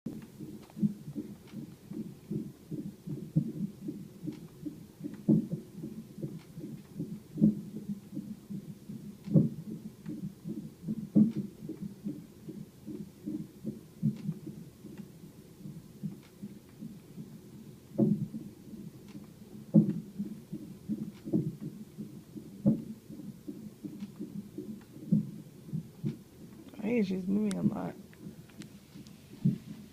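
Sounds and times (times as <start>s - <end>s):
fast fetal heartbeat pulsing: 0.1s - 29.9s
loud thumps on monitor: 18.0s - 18.3s.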